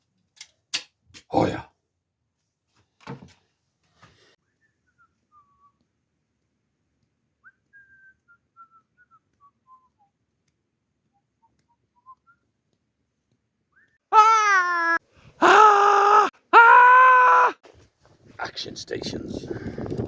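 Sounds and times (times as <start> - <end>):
person whistling a tune: 4.4 - 5.8, 7.4 - 10.1.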